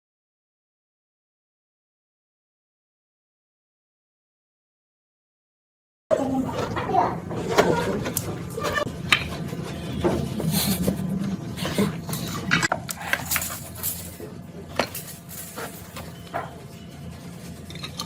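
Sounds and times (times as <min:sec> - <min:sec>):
small hard objects clinking: 0:12.5 - 0:16.2.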